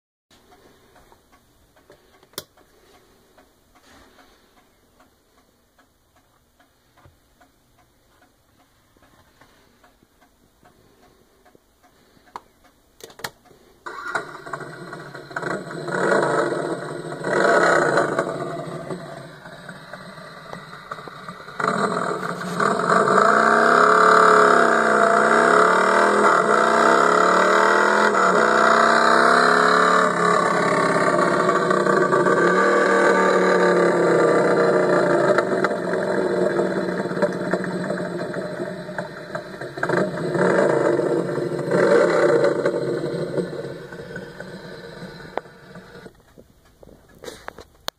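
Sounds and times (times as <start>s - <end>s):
clicks: 0.3s - 23.9s, 24.9s - 47.9s
motorcycle engine revving: 13.9s - 46.2s.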